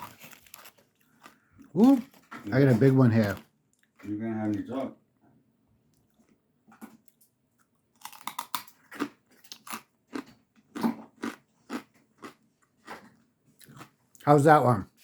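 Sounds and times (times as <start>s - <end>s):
crunching and chewing snacks: 0.0s - 4.6s, 6.0s - 14.4s.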